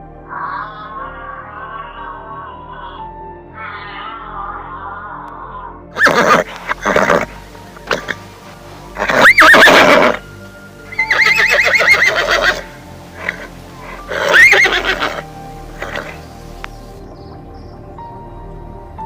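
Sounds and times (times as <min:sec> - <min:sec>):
soft background music: 0:00.0 - 0:19.0
horse whinnying: 0:05.9 - 0:08.3, 0:09.0 - 0:10.3, 0:10.9 - 0:16.2.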